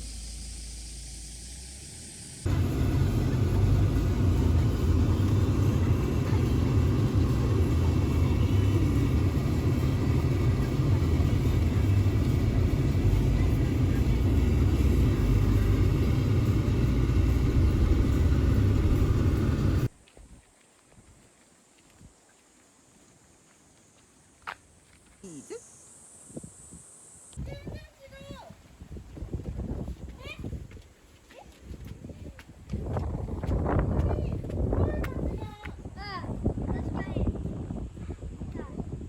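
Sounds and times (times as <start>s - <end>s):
vehicle engine and road rumble: 0.0s - 19.9s, 32.0s - 36.8s.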